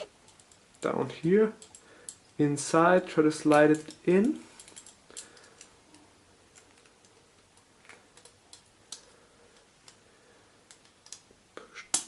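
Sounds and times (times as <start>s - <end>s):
faint metal clicks: 0.0s - 2.4s, 3.4s - 10.0s.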